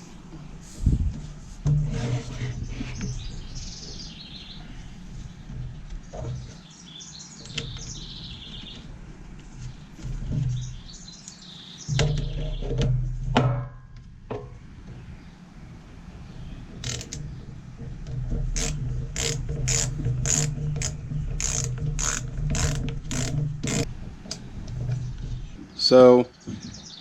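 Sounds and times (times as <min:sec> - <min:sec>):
birds chirping: 0:02.4 - 0:09.0, 0:20.1 - 0:27.0
chainsaw parts knocking and clattering: 0:16.8 - 0:17.2, 0:17.9 - 0:23.9.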